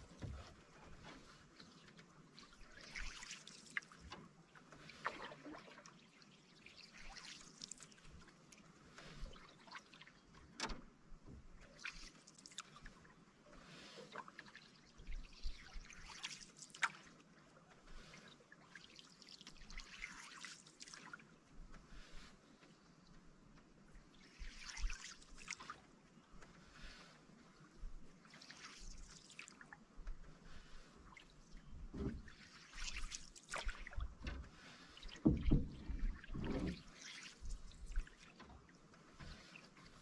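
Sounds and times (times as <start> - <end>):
paddle strokes in water: 0.0 - 40.0
water dripping off paddle: 31.0 - 38.6.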